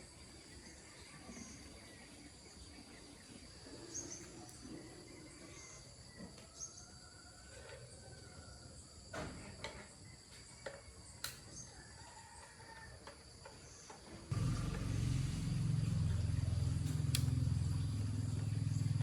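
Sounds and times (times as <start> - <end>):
distant rooster crowing: 6.3 - 9.2, 11.4 - 13.3
high insect drone: 13.7 - 19.0
sharp clicks: 16.8 - 17.4.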